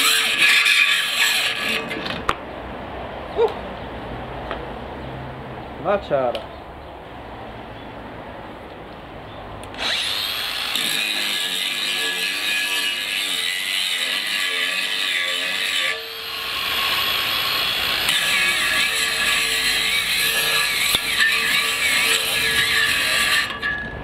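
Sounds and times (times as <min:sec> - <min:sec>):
angle grinder whining: 0:00.0 - 0:02.2, 0:09.7 - 0:24.0.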